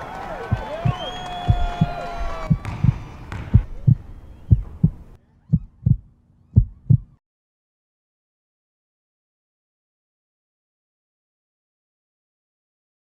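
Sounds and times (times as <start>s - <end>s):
background noise: 0.0s - 7.2s
heartbeat thumps: 0.5s - 7.2s.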